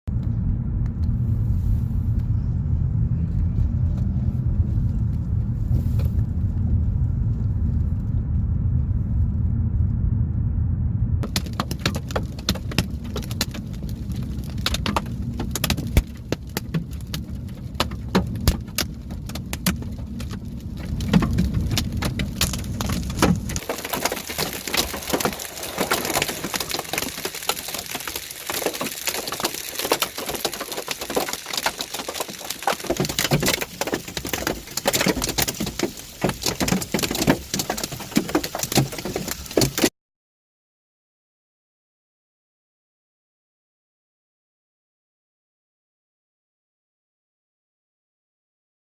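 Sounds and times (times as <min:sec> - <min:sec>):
vehicle rumble: 0:00.1 - 0:29.8
hail hitting vehicle: 0:11.2 - 0:39.9
rain pelting down: 0:11.2 - 0:39.9.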